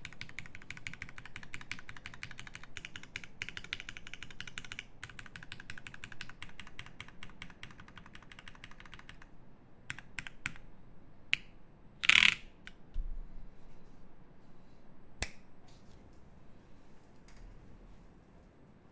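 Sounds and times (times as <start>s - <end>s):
mechanical keyboard typing: 0.0s - 9.3s, 9.9s - 10.6s, 12.0s - 12.4s.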